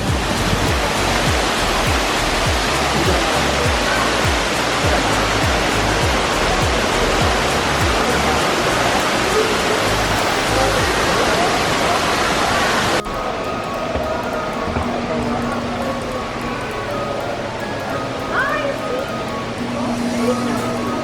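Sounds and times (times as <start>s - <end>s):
background music with thudding beat: 0.0s - 8.5s, 13.1s - 16.1s
rush of falling water: 0.0s - 17.5s.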